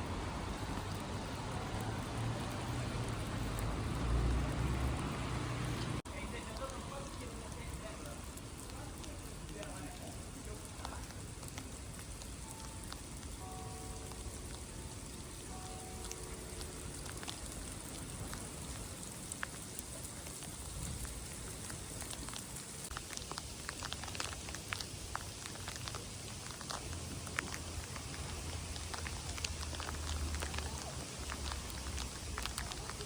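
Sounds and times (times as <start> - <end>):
raindrops ticking: 0.0 - 33.0
steady rain: 0.0 - 33.0
faint steady tones: 6.1 - 22.9.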